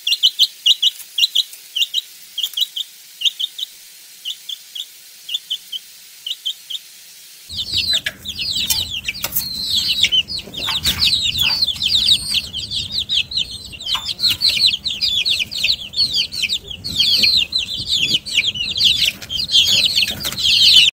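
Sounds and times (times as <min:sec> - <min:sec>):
baby chicks peeping: 0:00.0 - 0:06.9, 0:07.5 - 0:20.9
knocks and rustling: 0:07.5 - 0:20.9.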